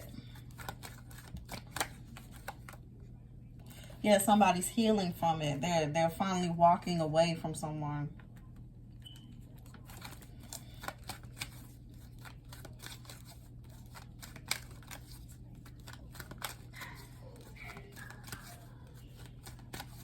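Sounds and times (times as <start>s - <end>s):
cards being shuffled: 0.0s - 2.8s, 9.2s - 20.0s
steady low hum: 0.0s - 20.0s.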